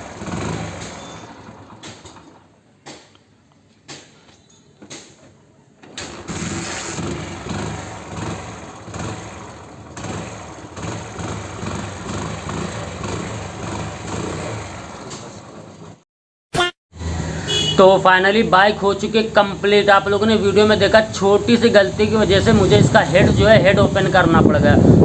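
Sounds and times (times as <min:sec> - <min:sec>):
motorcycle engine starting and revving: 0:00.0 - 0:03.1, 0:05.8 - 0:16.0, 0:18.4 - 0:25.0.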